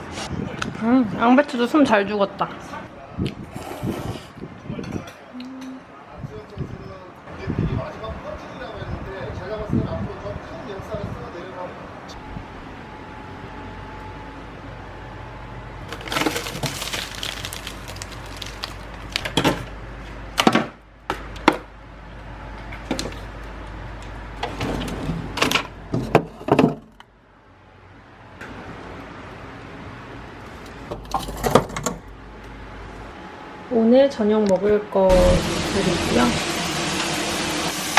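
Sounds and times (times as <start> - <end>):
low hum: 35.1 - 37.7.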